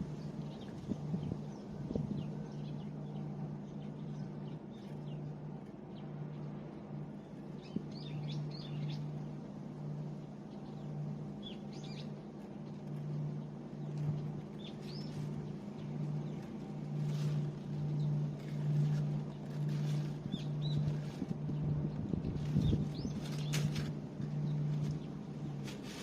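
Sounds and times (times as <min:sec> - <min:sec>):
steady low hum: 0:00.0 - 0:26.0
small birds chirping: 0:07.1 - 0:09.3, 0:10.5 - 0:26.0.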